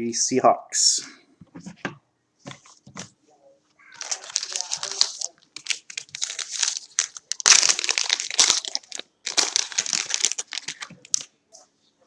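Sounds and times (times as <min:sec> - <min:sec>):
plastic wrapper crinkling: 0:03.9 - 0:11.3.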